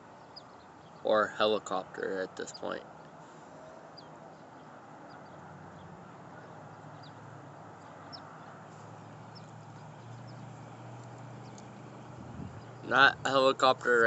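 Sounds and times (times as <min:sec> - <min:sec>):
helicopter drone overhead: 0:01.1 - 0:14.0
high bird chirps: 0:06.7 - 0:07.2, 0:07.8 - 0:10.6.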